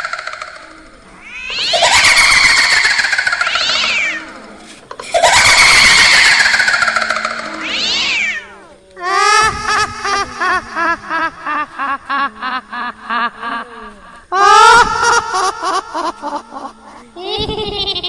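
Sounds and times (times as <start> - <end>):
long wavering wails: 0.0 - 4.8.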